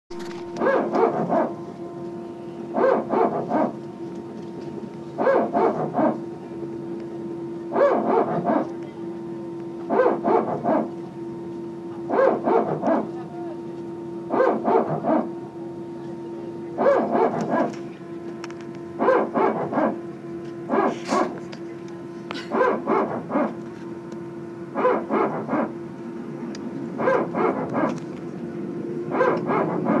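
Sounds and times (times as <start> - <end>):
hydraulic pump barking pulses: 0.1 - 1.6, 2.7 - 4.0, 5.2 - 6.3, 7.7 - 8.8, 9.8 - 11.0, 11.9 - 13.3, 14.2 - 15.4, 16.8 - 18.0, 18.9 - 21.5, 22.4 - 23.7, 24.7 - 25.8, 27.0 - 28.1, 29.1 - 30.0
steady hum: 0.1 - 30.0.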